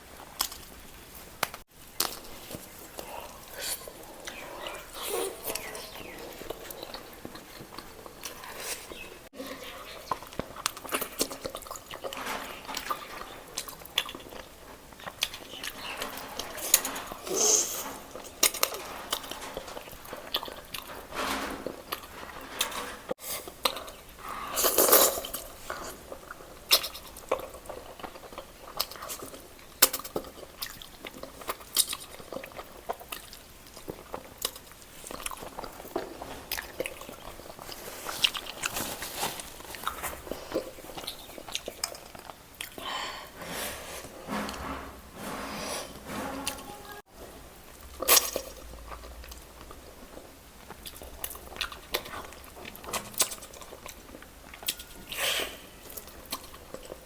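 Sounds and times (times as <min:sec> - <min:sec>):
person chewing and smacking: 0:39.7 - 0:42.8, 0:50.6 - 0:55.2.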